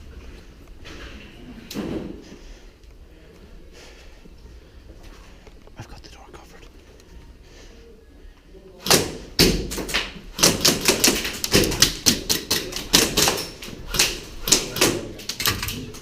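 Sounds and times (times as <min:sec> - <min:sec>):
airsoft guns firing: 0:08.8 - 0:15.2.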